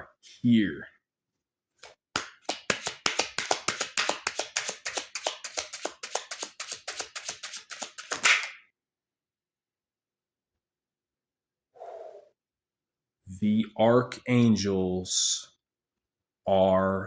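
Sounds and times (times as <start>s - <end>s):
cards shuffled by hand: 1.8s - 8.6s.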